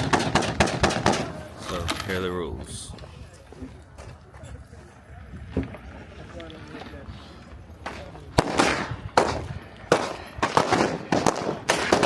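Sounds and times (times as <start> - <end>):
gunshots with echo: 0.0 - 1.4, 8.4 - 12.0.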